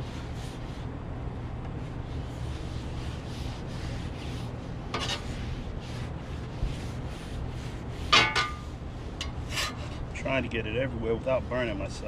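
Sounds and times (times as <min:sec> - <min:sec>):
paper towel wiping griddle: 0:01.8 - 0:12.0
scrape on griddle: 0:02.2 - 0:10.3.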